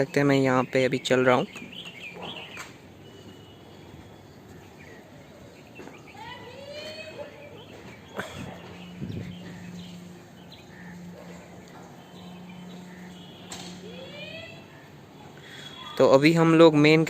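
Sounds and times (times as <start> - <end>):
bird calls: 0.5 - 16.0
steady low hum: 7.3 - 15.8.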